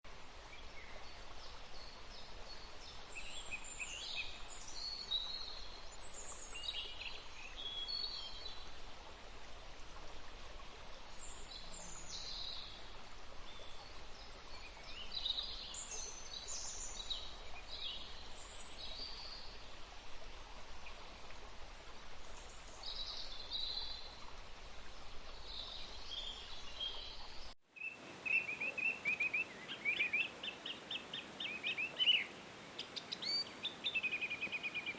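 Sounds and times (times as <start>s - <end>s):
small birds chirping: 26.3s - 34.9s
steady background hiss: 27.7s - 34.9s.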